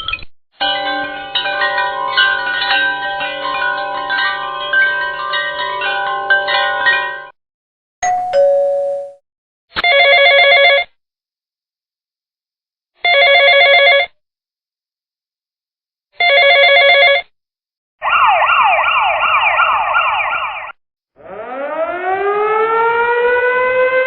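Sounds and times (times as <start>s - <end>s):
trilling bell ring: 0.0s - 7.3s, 8.0s - 9.2s.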